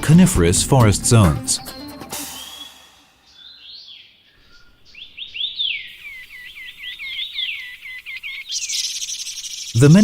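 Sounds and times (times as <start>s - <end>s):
songbird whistling notes: 2.2s - 9.8s.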